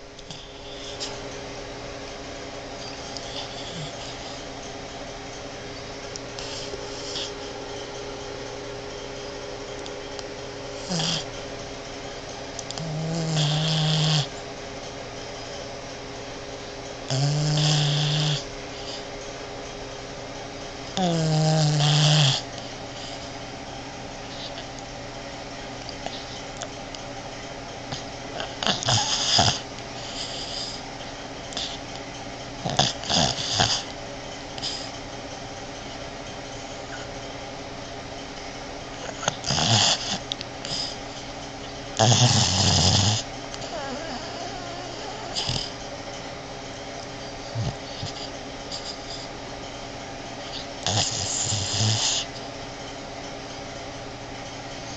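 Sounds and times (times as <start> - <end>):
steady low hum: 0.0 - 54.9
dog snoring: 0.2 - 1.2, 2.8 - 4.5, 6.4 - 7.5, 10.7 - 11.3, 12.6 - 14.4, 17.1 - 19.1, 20.9 - 23.4, 24.3 - 24.7, 27.9 - 31.9, 32.6 - 34.0, 34.6 - 35.0, 38.9 - 45.8, 47.2 - 49.4, 50.4 - 52.5.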